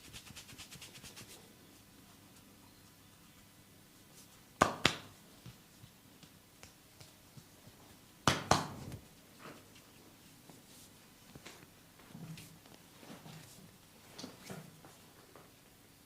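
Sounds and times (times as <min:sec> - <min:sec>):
hands smacking the body: 0:04.6 - 0:05.1, 0:08.3 - 0:09.0.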